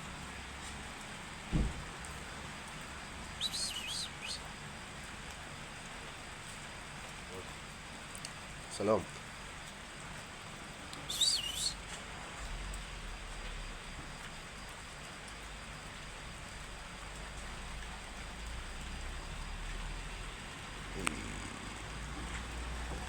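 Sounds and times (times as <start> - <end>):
steady rain falling: 0.0 - 23.0
bird short high call: 3.4 - 4.5, 11.0 - 11.8.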